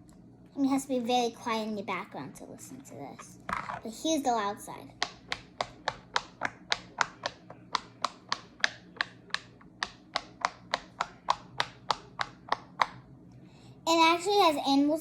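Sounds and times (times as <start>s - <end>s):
fidget toy bubbles popping: 3.5s - 3.9s, 5.0s - 13.0s.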